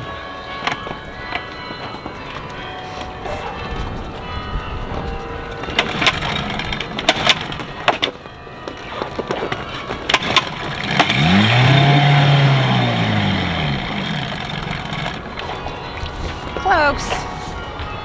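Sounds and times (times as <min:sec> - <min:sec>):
outboard engine firing: 0:05.8 - 0:17.3.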